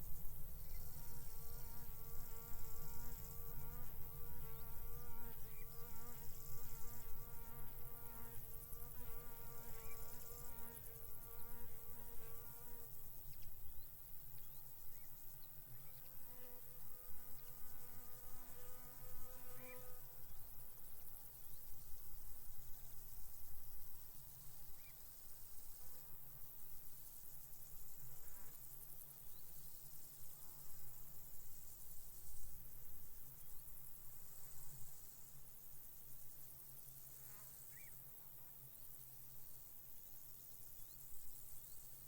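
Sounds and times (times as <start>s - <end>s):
flying insect buzzing: 0.6s - 13.0s.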